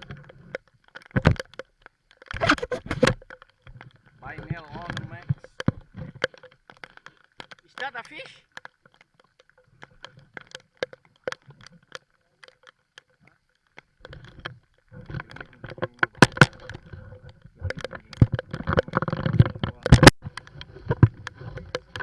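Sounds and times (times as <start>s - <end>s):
sharp clicks and taps: 2.3s - 3.2s, 17.6s - 22.0s.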